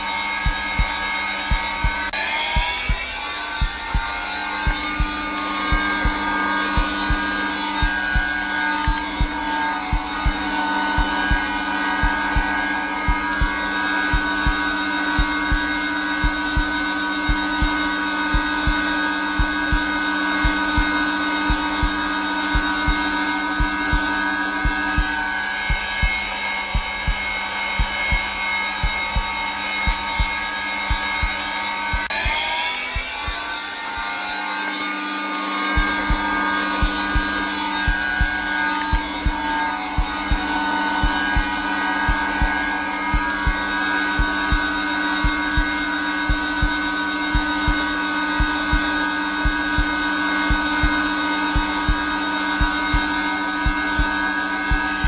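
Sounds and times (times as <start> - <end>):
heartbeat thumping: 0.0 - 34.1, 35.7 - 55.0
vacuum cleaner motor whining: 0.0 - 55.0.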